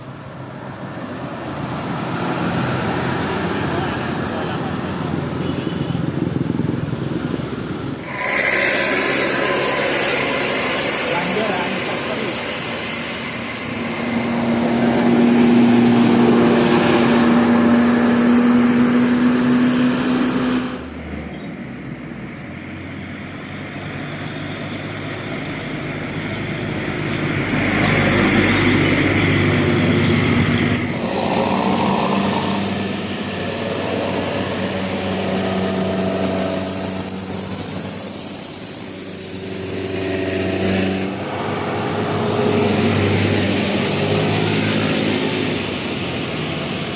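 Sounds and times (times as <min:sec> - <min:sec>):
vehicle engine and tyre noise: 0:00.0 - 0:46.9
high thin whine: 0:07.3 - 0:21.0, 0:25.3 - 0:46.9.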